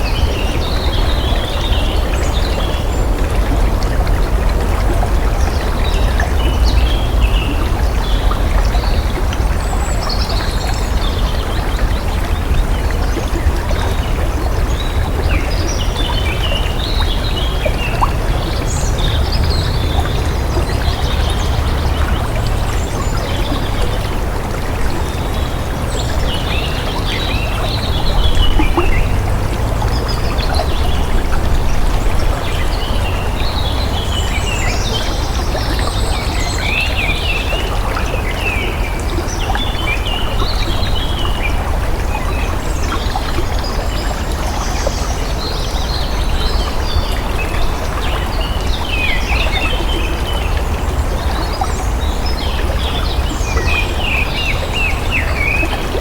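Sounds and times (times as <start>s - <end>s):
running water: 0.0s - 56.0s.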